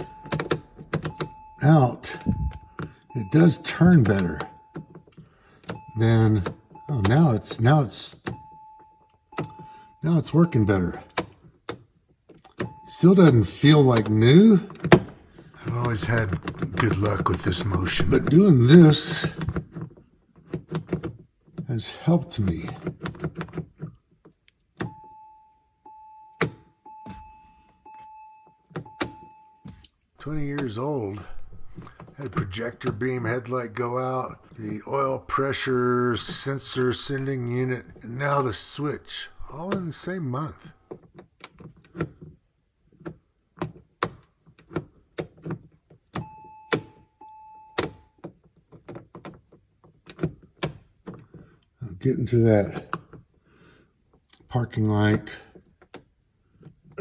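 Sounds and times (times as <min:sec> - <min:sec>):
car electronic chime: 0:00.0 - 0:03.4
car warning chime: 0:00.0 - 0:05.0, 0:05.7 - 0:11.2, 0:15.6 - 0:19.4, 0:30.2 - 0:40.6.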